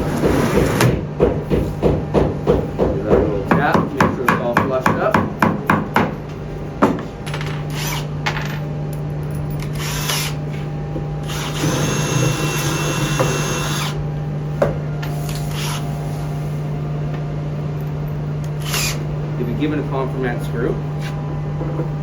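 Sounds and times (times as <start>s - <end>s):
power drill whining: 9.7s - 10.4s, 11.2s - 14.0s, 18.6s - 19.0s.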